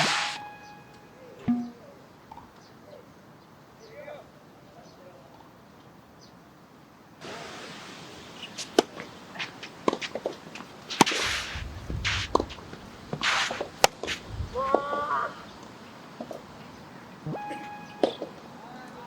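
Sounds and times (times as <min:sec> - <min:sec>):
tennis ball hits: 0:01.4 - 0:01.8
wind buffeting microphone: 0:11.2 - 0:14.9.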